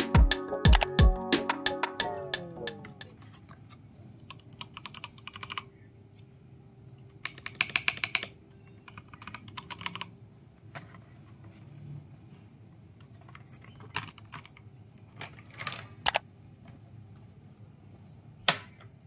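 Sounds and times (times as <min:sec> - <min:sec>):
mechanical keyboard typing: 0:00.7 - 0:01.0, 0:04.3 - 0:05.7, 0:07.2 - 0:10.2, 0:13.2 - 0:16.2.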